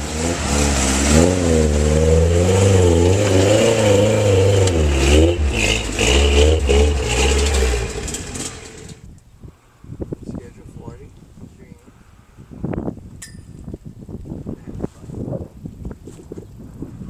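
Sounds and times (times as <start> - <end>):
truck engine revving: 0.0 - 9.0.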